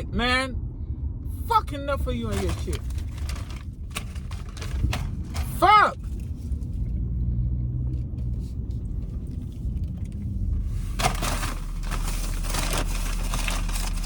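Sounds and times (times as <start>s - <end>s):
car interior rumble: 0.0s - 14.0s
crinkling and rustling: 2.2s - 7.1s, 7.8s - 14.0s.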